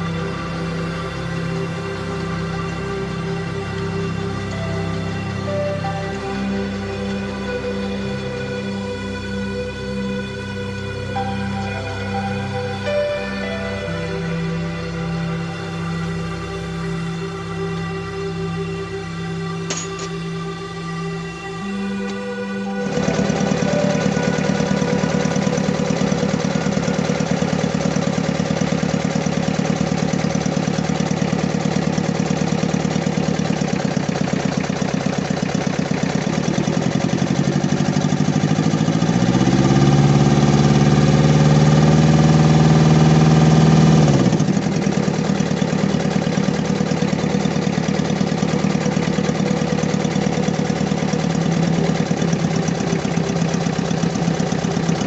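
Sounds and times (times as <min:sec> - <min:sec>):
engine idling with misfire: 0:22.8 - 0:55.0.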